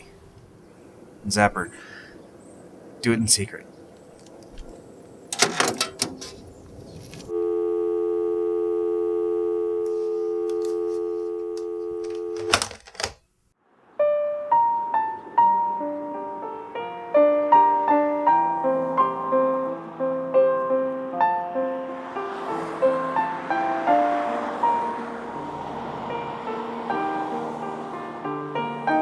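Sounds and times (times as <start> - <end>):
telephone handset clatter: 5.3 - 6.3, 11.6 - 13.2
piano music: 7.3 - 12.5, 13.8 - 29.0
telephone dial tone: 7.3 - 13.2.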